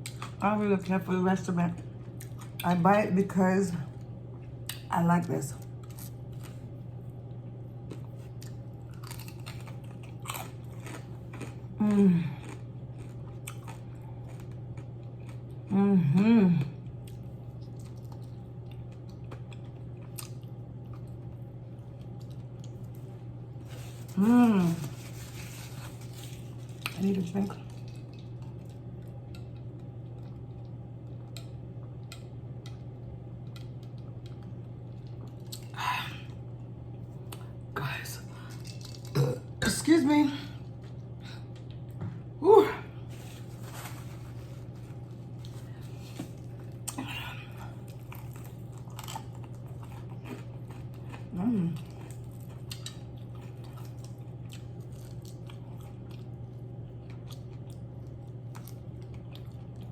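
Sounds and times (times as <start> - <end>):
chewing and crunching: 0.0 - 3.0, 5.6 - 15.7, 16.6 - 37.6, 38.2 - 39.6, 43.1 - 59.9
low electrical hum: 0.0 - 59.9
person humming mm: 15.7 - 16.8.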